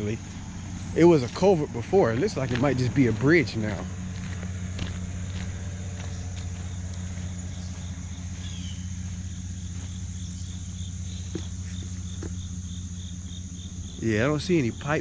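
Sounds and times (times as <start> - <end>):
insects whining: 0.0 - 15.0
truck engine idling: 0.0 - 15.0
faint regular chirp: 5.9 - 14.1.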